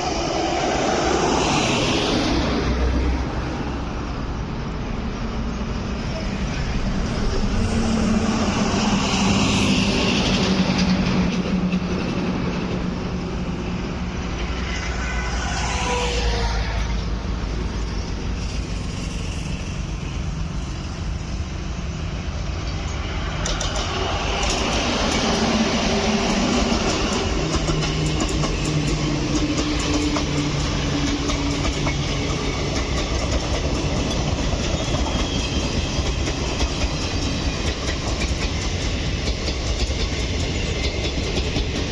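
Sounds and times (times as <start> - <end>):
train rumbling over bridge: 0.0 - 41.9
wheels clattering over rail joints: 22.6 - 41.9.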